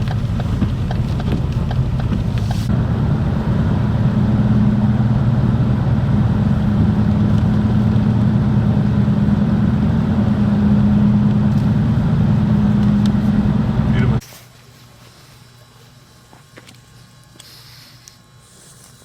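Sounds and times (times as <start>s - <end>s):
vehicle engine humming: 0.0s - 14.2s.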